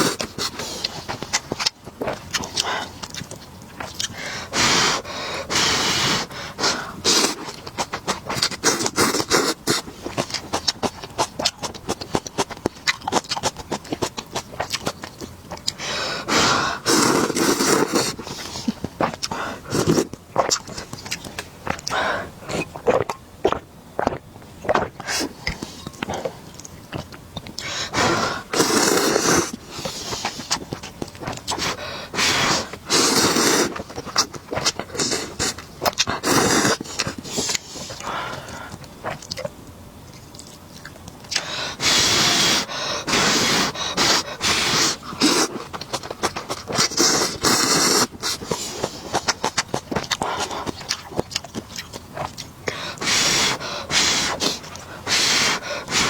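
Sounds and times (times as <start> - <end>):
chewing: 0.0 - 4.2, 7.1 - 15.8, 16.8 - 27.7, 28.4 - 31.8, 32.7 - 41.9, 42.7 - 56.0
loud noodle slurping: 16.0 - 20.5, 27.6 - 30.5, 31.5 - 35.6, 36.2 - 37.6, 41.4 - 49.4, 52.7 - 56.0.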